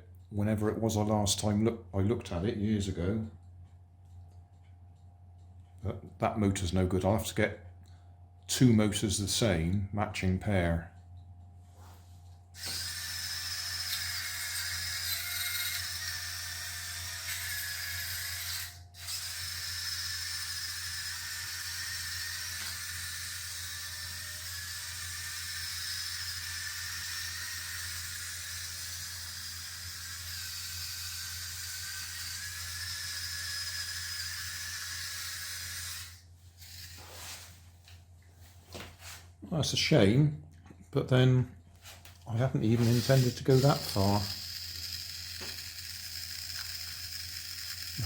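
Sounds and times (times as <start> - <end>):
toy car motors whining: 12.6 - 37.5, 42.6 - 48.0.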